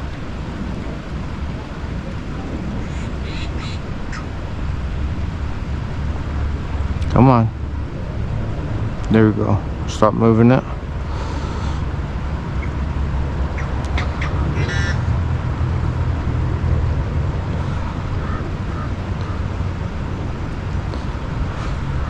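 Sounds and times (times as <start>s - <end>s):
distant road traffic rumble: 0.0s - 22.0s
faint clicks: 11.6s - 14.8s, 17.4s - 22.0s.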